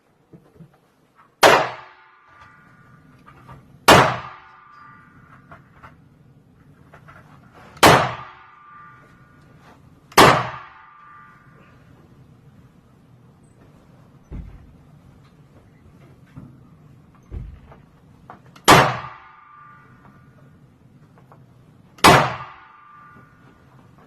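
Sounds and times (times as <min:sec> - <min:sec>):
gunshots: 0:01.4 - 0:02.4, 0:03.9 - 0:04.6, 0:07.8 - 0:08.6, 0:10.2 - 0:11.0, 0:18.6 - 0:19.4, 0:22.0 - 0:22.8
metallic ringing: 0:04.2 - 0:05.8, 0:08.1 - 0:09.8, 0:10.4 - 0:12.6, 0:19.1 - 0:20.6, 0:22.4 - 0:24.0.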